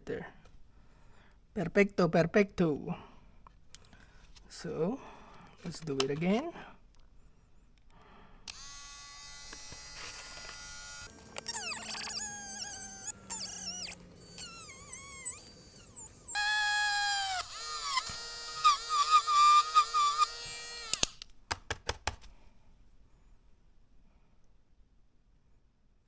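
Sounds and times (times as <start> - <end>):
electric drill whining: 8.5 - 21.2
sharp clicks: 20.1 - 22.3.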